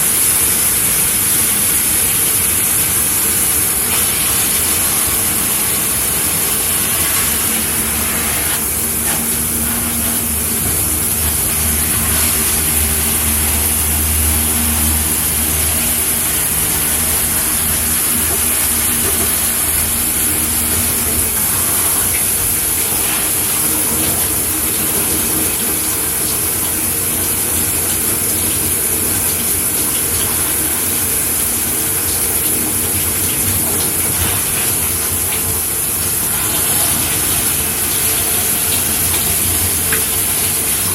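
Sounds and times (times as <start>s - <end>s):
shower spraying water: 0.0s - 40.9s.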